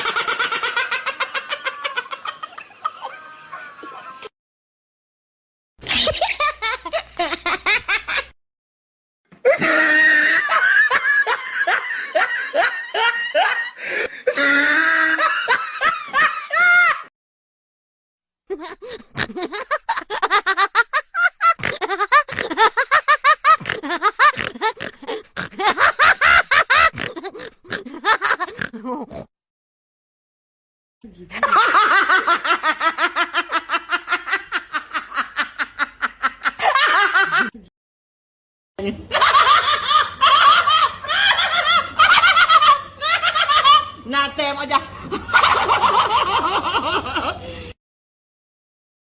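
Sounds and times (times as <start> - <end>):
hearty cackling laughter: 0.0 - 4.3, 5.8 - 8.4, 9.5 - 17.1, 18.5 - 28.8, 31.2 - 37.6, 39.0 - 44.0, 45.0 - 47.5
high-pitched laughing: 0.0 - 4.3, 5.8 - 8.3, 14.3 - 17.1.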